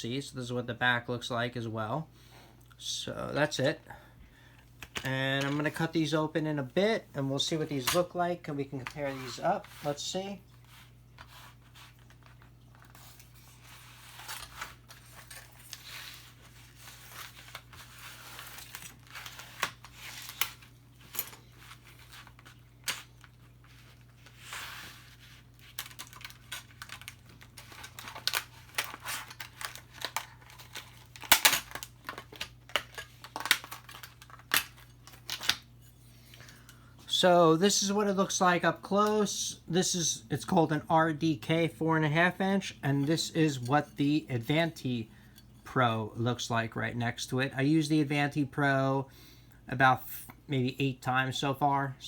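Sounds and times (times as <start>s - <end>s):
plastic and card packaging tearing: 10.7s - 20.8s, 21.4s - 35.7s.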